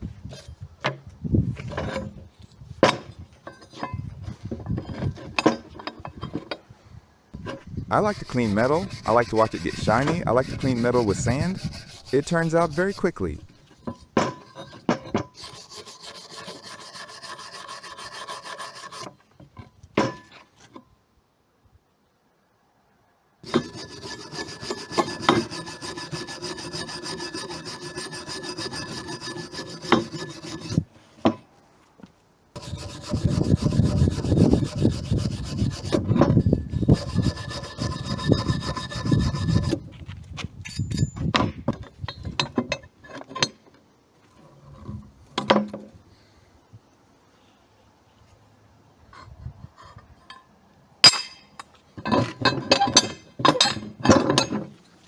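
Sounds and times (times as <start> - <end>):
sandpaper rubbing on metal: 7.9 - 13.6, 15.4 - 19.1, 23.4 - 30.8, 32.6 - 39.9.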